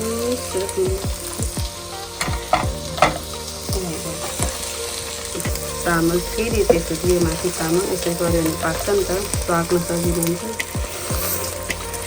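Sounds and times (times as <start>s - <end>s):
food sizzling in a pot: 2.0s - 12.0s.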